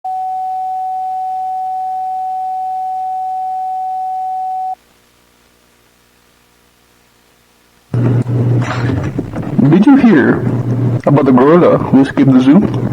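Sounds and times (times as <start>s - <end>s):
electronic sine-wave alert tone: 0.1s - 4.8s.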